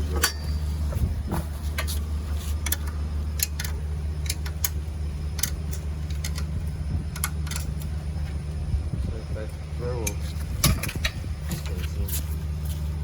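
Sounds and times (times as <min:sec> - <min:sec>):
steady low hum: 0:00.0 - 0:13.0
spanner clicking on bolts: 0:02.6 - 0:06.5, 0:07.1 - 0:07.9.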